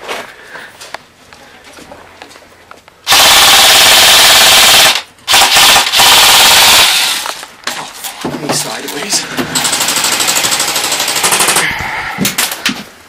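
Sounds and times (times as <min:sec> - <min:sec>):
airsoft rifle full-auto bursts: 0:03.1 - 0:07.4, 0:09.6 - 0:11.7.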